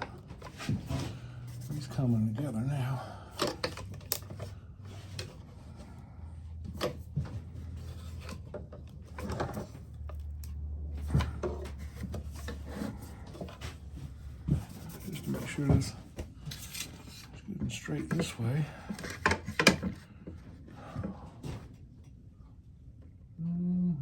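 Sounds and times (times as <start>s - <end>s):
low hum: 22.0s - 24.0s.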